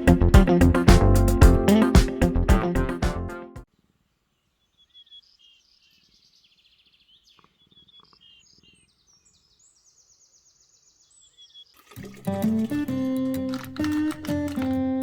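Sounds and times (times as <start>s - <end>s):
birds chirping and trilling: 4.3s - 13.1s.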